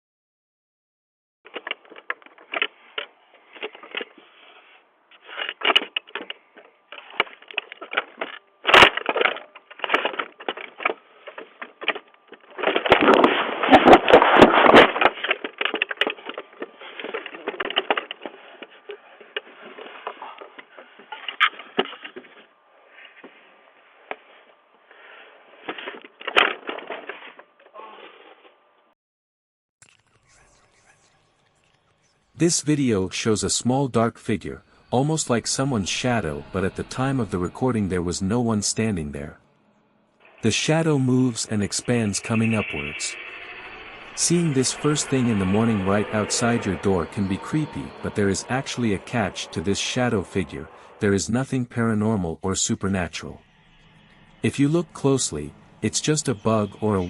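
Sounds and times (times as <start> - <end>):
clattering and scraping: 1.5 - 23.4, 25.6 - 28.5.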